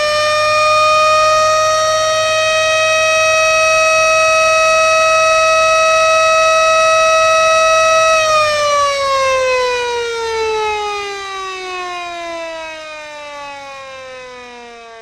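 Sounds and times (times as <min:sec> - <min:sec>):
siren winding down: 0:00.0 - 0:15.0.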